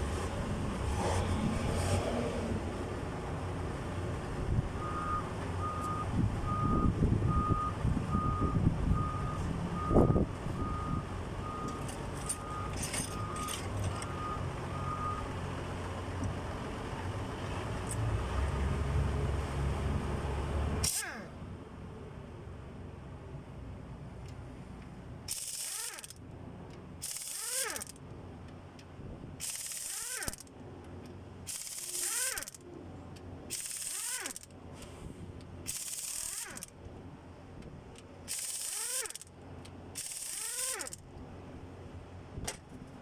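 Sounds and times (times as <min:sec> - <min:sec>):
reversing alarm beeping: 0:04.8 - 0:15.4.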